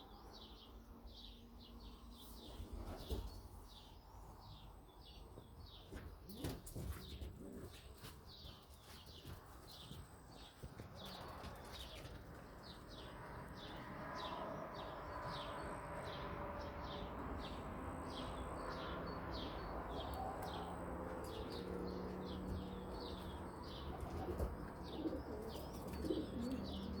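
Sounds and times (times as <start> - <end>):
pigeons cooing: 19.4 - 27.0.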